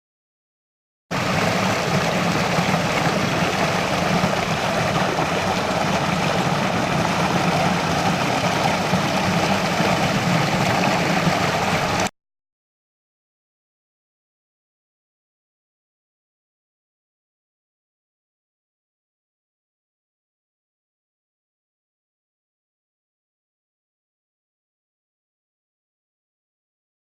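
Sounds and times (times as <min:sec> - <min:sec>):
running water: 0:01.1 - 0:12.1.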